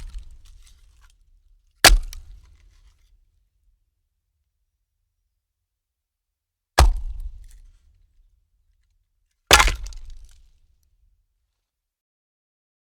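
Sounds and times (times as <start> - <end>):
logs dropped onto woodpile: 0.0 - 1.0, 9.5 - 10.4.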